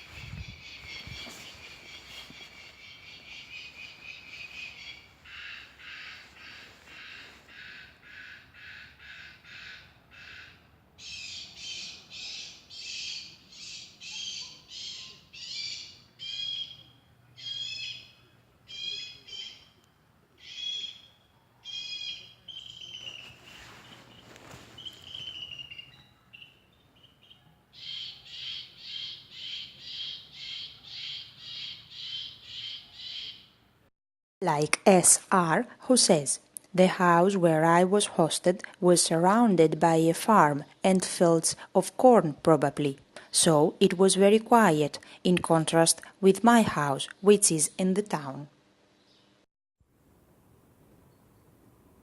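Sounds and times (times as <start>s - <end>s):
high-pitched animal calls: 0.0s - 19.8s, 20.4s - 33.5s.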